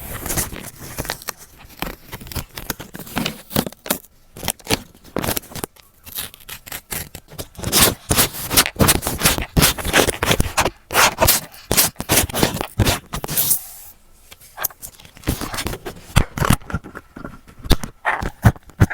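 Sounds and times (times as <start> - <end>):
paper and stickers rustling: 0.0 - 18.9.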